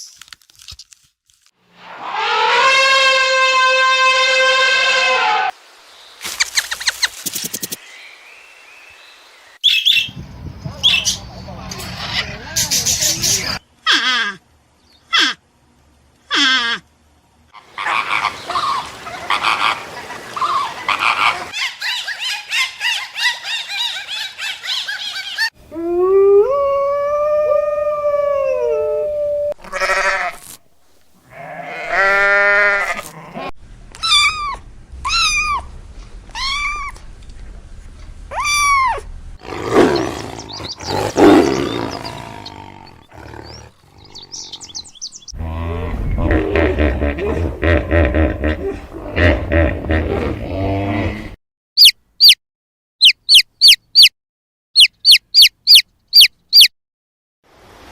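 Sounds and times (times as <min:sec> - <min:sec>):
rough pulsing animal cries: 0:31.2 - 0:35.7
short downward-sweeping calls: 0:53.0 - 0:54.1, 0:54.8 - 0:56.7.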